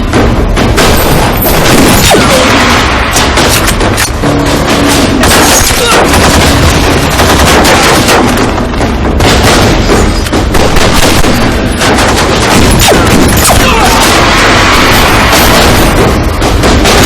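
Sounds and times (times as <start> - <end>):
rapid gunfire: 0.0 - 17.0.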